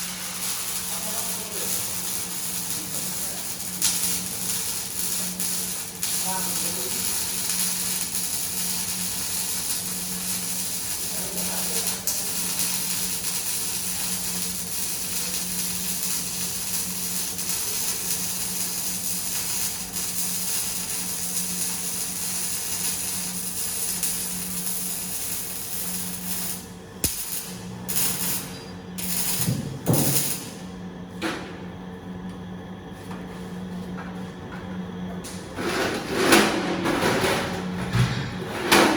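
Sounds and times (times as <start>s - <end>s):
welding arc hissing crackle: 0.0s - 30.8s.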